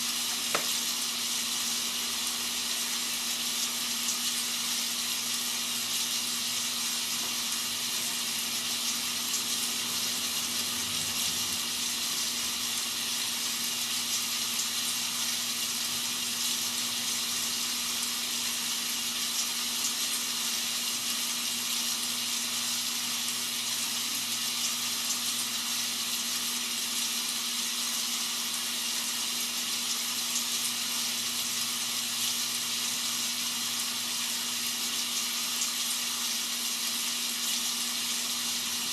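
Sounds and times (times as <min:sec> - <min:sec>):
rain hissing: 0:00.0 - 0:21.1.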